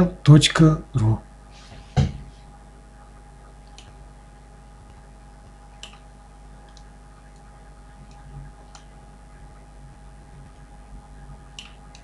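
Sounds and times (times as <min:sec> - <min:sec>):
low electrical hum: 0:00.0 - 0:12.0
faint sharp clicks: 0:03.2 - 0:03.9, 0:05.8 - 0:07.5.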